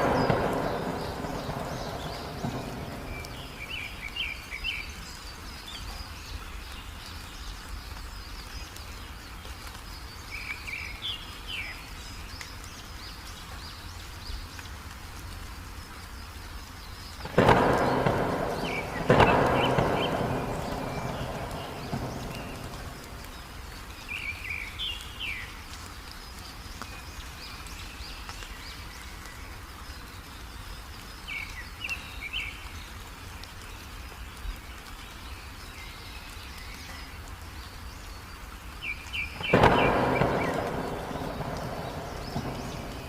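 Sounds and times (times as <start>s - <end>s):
thunderclaps rumbling: 0.0s - 4.3s, 17.2s - 24.2s, 39.4s - 43.0s
bird chirps: 0.0s - 6.5s, 17.2s - 25.5s, 38.8s - 43.0s
heavy rain: 0.0s - 43.0s.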